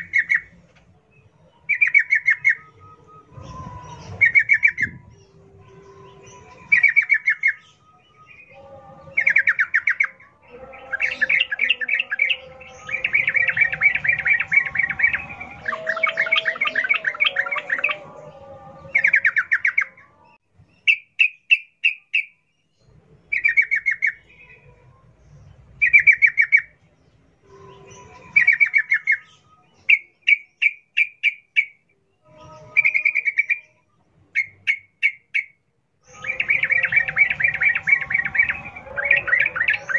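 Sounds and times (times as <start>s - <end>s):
bird singing chattering notes: 1.6s - 10.2s.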